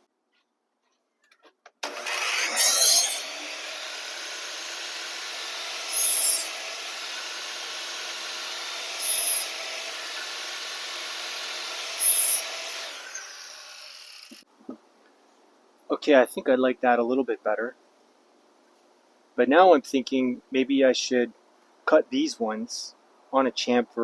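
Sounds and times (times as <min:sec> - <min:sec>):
power saw cutting wood: 0:01.8 - 0:14.4.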